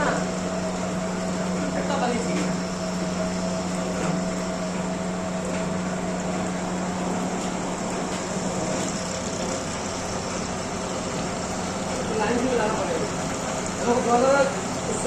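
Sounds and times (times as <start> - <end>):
milling machine humming: 0.0 - 15.0.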